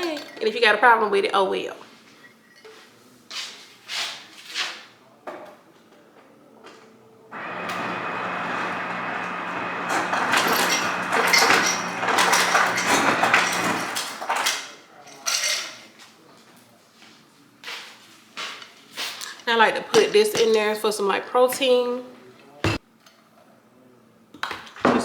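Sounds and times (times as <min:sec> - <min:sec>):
kitchen appliance motor whirring: 0:07.4 - 0:14.4
clattering: 0:07.4 - 0:14.7
kitchenware clinking: 0:07.4 - 0:16.0.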